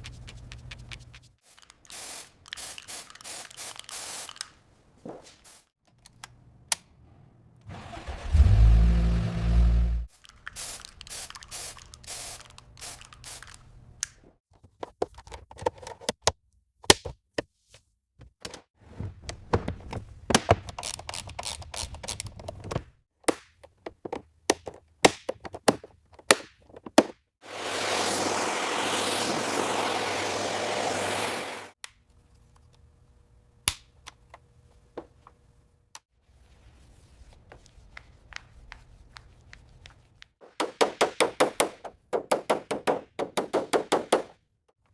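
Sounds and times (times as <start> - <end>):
steady hissing: 27.4 - 31.8.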